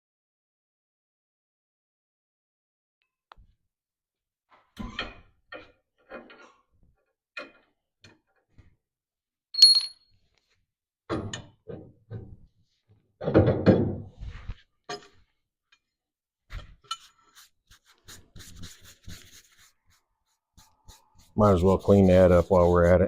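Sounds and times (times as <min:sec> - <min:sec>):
ringing metal clink: 0:09.6 - 0:10.1.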